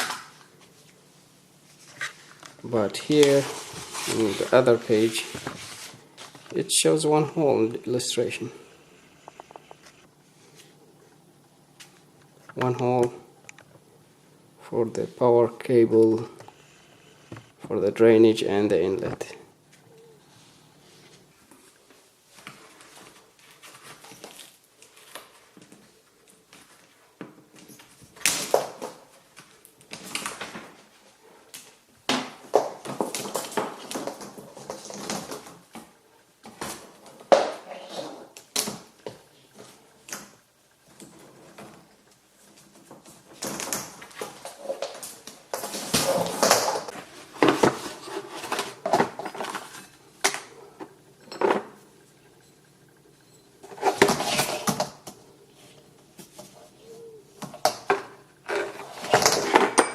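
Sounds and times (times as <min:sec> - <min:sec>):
objects being handled: 0:01.6 - 0:06.6, 0:32.4 - 0:59.9.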